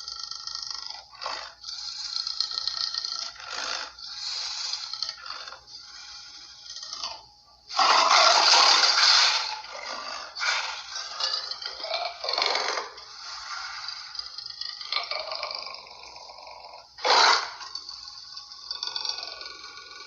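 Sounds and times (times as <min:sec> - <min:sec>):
harsh raspy snarls: 0:00.0 - 0:20.0.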